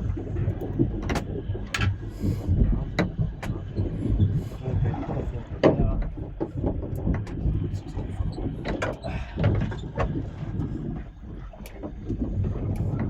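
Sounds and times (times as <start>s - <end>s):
boat engine rumble: 0.0s - 13.0s
wind on microphone: 0.0s - 13.0s.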